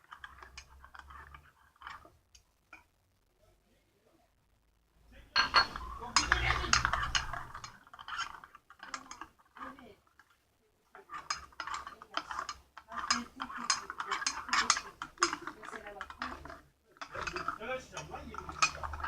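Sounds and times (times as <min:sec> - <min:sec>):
spoon clinking and scraping container: 0:00.0 - 0:02.1, 0:05.4 - 0:10.3, 0:11.0 - 0:19.0.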